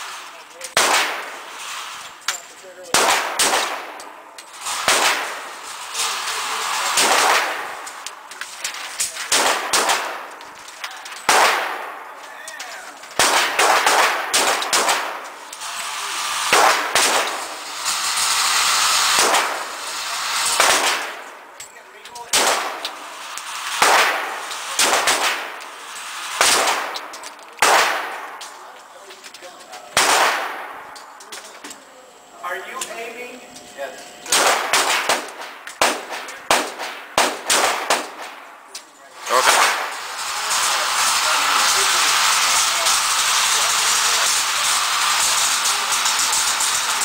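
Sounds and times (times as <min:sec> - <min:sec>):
pistol shots echoing: 0:00.7 - 0:01.5, 0:02.9 - 0:04.2, 0:04.8 - 0:05.6, 0:06.9 - 0:08.1, 0:09.2 - 0:10.4, 0:11.2 - 0:12.2, 0:13.1 - 0:15.5, 0:16.4 - 0:17.6, 0:19.0 - 0:19.8, 0:20.6 - 0:21.3, 0:22.3 - 0:28.6, 0:30.0 - 0:31.0, 0:34.3 - 0:38.5.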